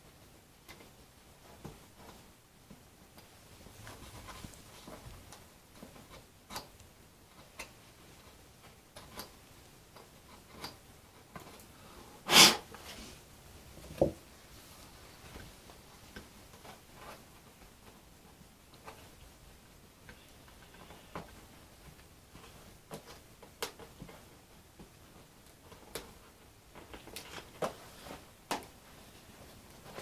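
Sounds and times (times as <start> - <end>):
small clicks and taps: 20.0 - 27.8.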